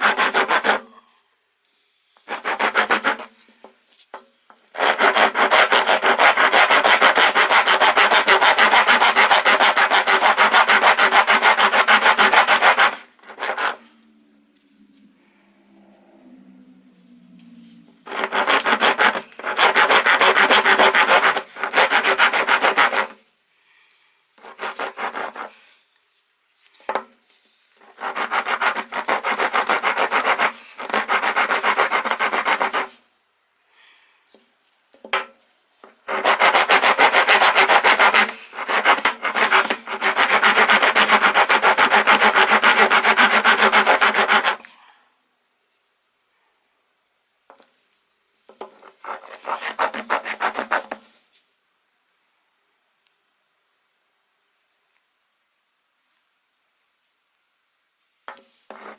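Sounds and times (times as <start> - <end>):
wood rasp filing wood: 0.0 - 0.9, 2.2 - 3.4, 4.8 - 13.8, 18.1 - 23.2, 24.4 - 25.5, 27.9 - 33.0, 35.9 - 44.7, 48.8 - 51.0.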